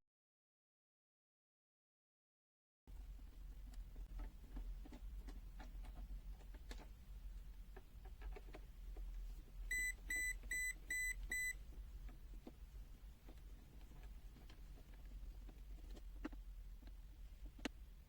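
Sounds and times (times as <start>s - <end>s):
multimeter high-pitched beeps: 9.7s - 11.6s.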